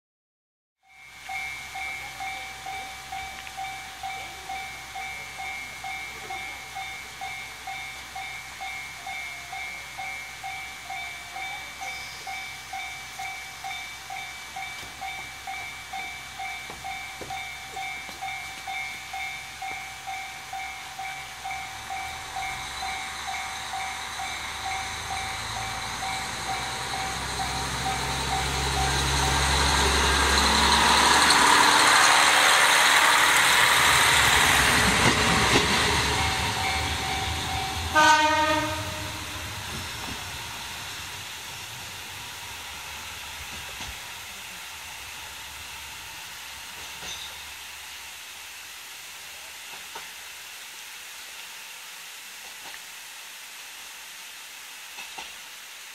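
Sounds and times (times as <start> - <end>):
warning bell ringing: 0.8 - 32.2, 35.8 - 39.5
diesel train engine: 0.8 - 55.9
train rumble passing: 0.9 - 50.3.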